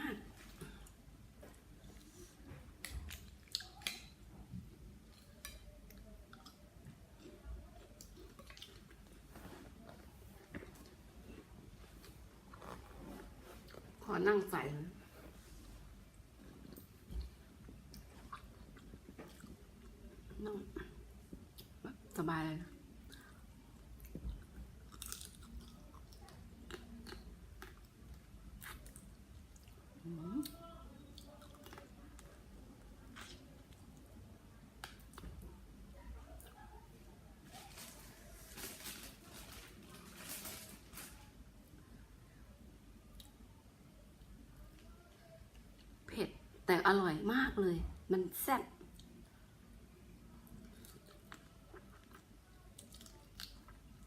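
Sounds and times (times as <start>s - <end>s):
person chewing: 16.5s - 20.0s, 24.0s - 29.8s, 50.6s - 54.0s
person chewing crab: 24.8s - 27.9s.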